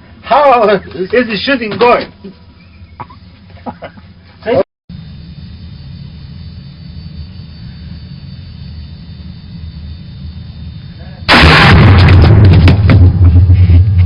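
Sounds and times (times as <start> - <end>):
low steady rumble: 0.0 - 14.0
loud crackling noise: 11.3 - 14.0
loud distorted gunshot: 11.3 - 14.0.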